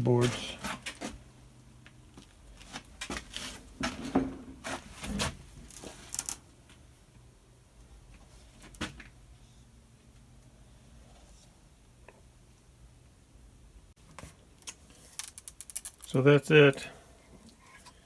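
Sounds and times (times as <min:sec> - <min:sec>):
light knocks and clatters of parts: 0:01.8 - 0:07.2.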